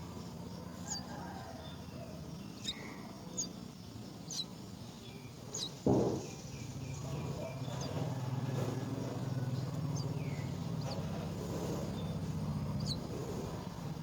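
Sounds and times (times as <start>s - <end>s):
small bird chirping: 0.8s - 8.0s, 9.1s - 14.0s
engine humming: 6.6s - 14.0s.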